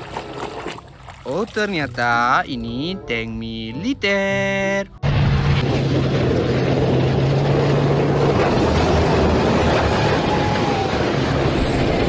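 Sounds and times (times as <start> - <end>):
tank engine rumble: 4.8 - 12.0.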